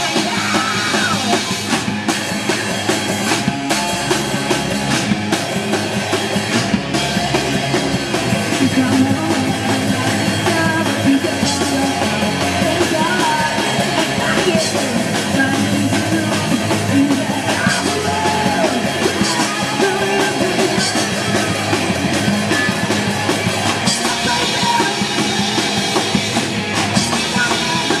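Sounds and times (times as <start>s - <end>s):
person singing: 0.0s - 1.6s, 8.5s - 28.0s
drum kit: 0.0s - 28.0s
punk rock music: 0.0s - 28.0s.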